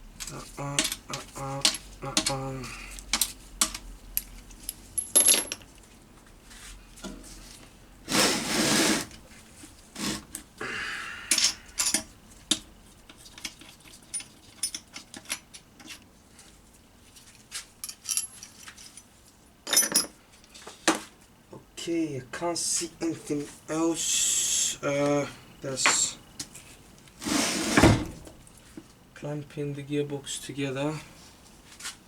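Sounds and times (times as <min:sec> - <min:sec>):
metal bolts and tools clinking: 0:03.1 - 0:05.7, 0:11.4 - 0:16.0, 0:17.8 - 0:19.1, 0:19.7 - 0:20.2
noisy scraping: 0:27.2 - 0:28.0.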